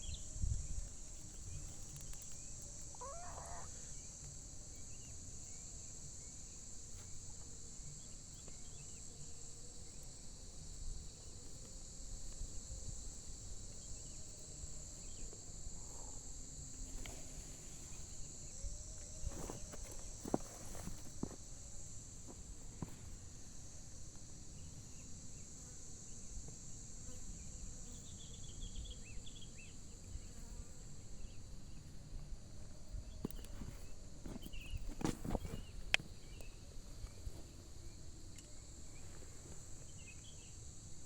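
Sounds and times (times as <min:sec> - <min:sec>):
faint bird chirps: 0:00.0 - 0:04.1
high-pitched insect drone: 0:00.0 - 0:06.6.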